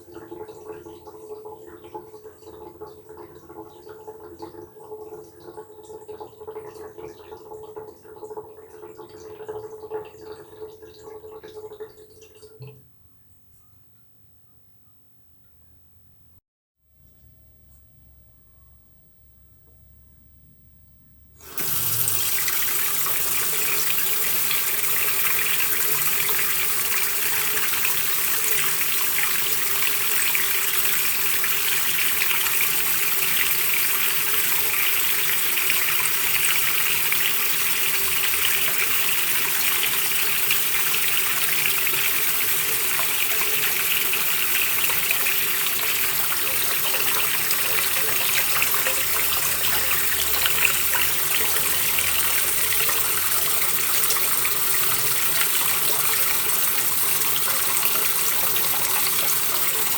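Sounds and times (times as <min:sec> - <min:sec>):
tap water splashing into basin: 0:05.2 - 0:12.9, 0:21.4 - 0:59.9.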